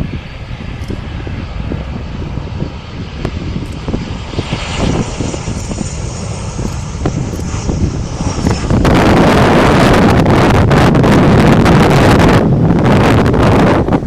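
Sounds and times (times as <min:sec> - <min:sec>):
jet engines rumbling: 0:00.0 - 0:14.0
wind noise on microphone: 0:00.0 - 0:14.0.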